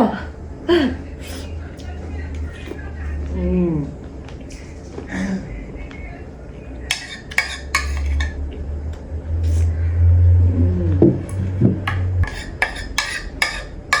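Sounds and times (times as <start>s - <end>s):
cutlery clinking on dishes: 6.9s - 8.4s, 11.9s - 14.0s
loud low hum: 8.0s - 12.6s.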